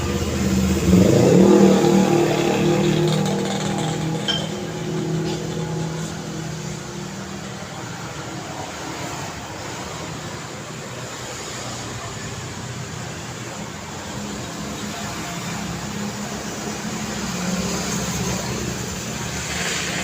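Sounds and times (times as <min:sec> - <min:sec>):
vehicle engine passing: 0:00.0 - 0:12.5
traffic hum: 0:00.0 - 0:20.0.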